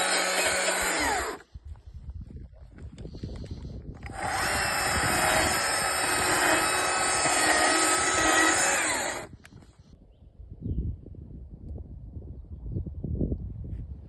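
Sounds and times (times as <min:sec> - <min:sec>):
chainsaw cutting wood: 0:00.0 - 0:01.4, 0:04.0 - 0:09.4.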